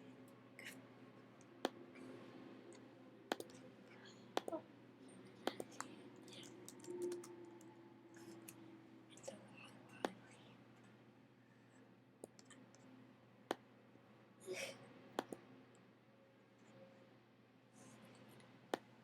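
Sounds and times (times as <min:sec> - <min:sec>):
faint low hum: 0:00.0 - 0:19.0
computer mouse clicks: 0:02.7 - 0:03.6, 0:05.3 - 0:08.6, 0:12.2 - 0:12.9.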